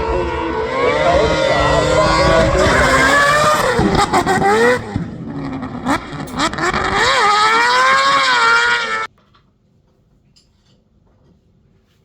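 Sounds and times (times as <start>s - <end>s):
race car engine revving: 0.0s - 9.1s.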